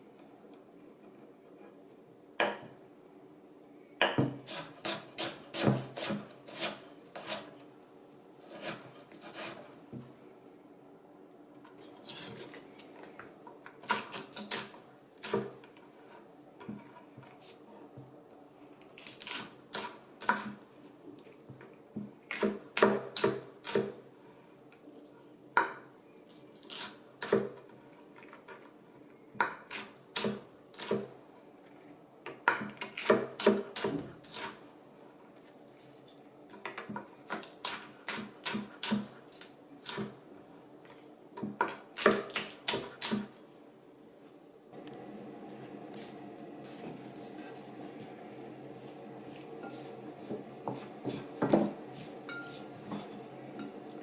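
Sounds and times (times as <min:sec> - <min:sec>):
utensils clinking against dishes: 0:52.2 - 0:53.8.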